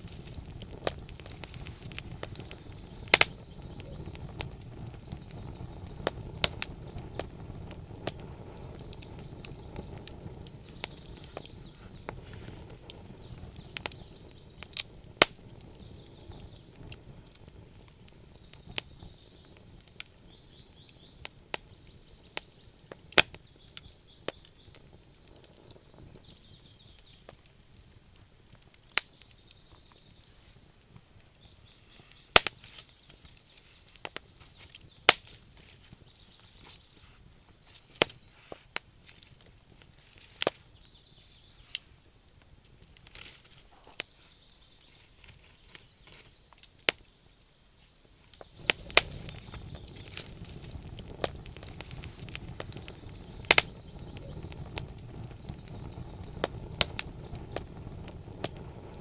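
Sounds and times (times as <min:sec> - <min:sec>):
low rumble of flame: 0:00.0 - 0:59.0
wood fire crackling and popping: 0:00.0 - 0:59.0.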